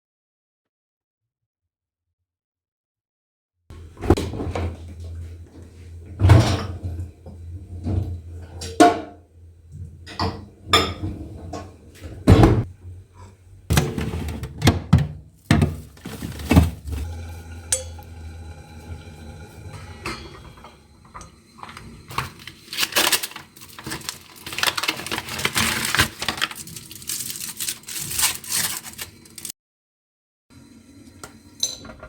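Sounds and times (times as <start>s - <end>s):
low steady hum: 3.7s - 14.5s, 15.4s - 22.9s
dishes and utensils clinking: 10.0s - 11.7s, 15.5s - 18.2s, 19.6s - 25.2s.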